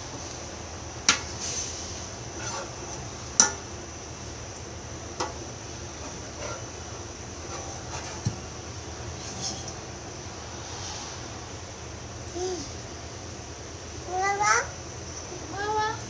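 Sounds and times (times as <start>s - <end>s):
faint steady hiss: 0.0s - 16.0s
soft scraping and rattling: 7.4s - 8.5s, 9.1s - 9.8s.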